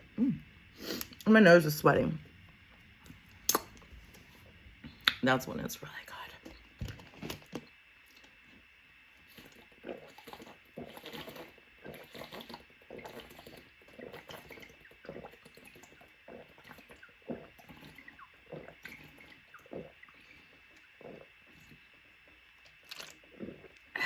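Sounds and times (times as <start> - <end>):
person swallowing water in gulps: 9.2 - 24.0.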